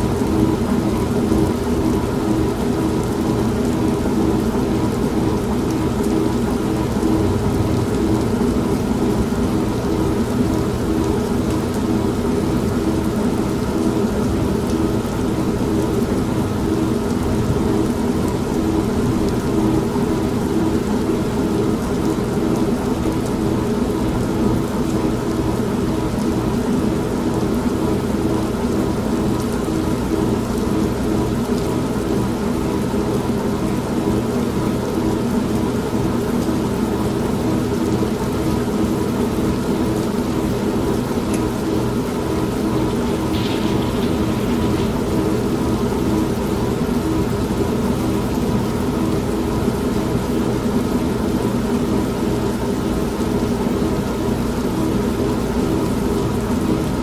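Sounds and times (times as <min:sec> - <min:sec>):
steady rain: 0:00.0 - 0:57.0
washing machine humming: 0:00.0 - 0:57.0
rolling thunder: 0:05.9 - 0:10.9, 0:42.5 - 0:47.0.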